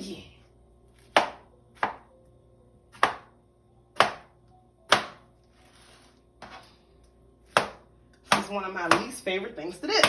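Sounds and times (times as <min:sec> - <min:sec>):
knife chopping on cutting board: 0:01.0 - 0:02.0, 0:02.9 - 0:03.3, 0:04.0 - 0:04.3, 0:04.9 - 0:05.3, 0:07.5 - 0:09.2.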